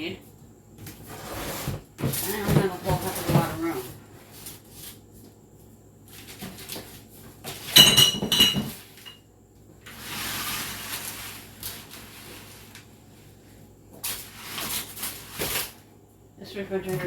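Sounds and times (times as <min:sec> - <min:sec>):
dishes and glass knocking together: 0:07.8 - 0:09.2
loud ringing glass clink: 0:07.8 - 0:09.2.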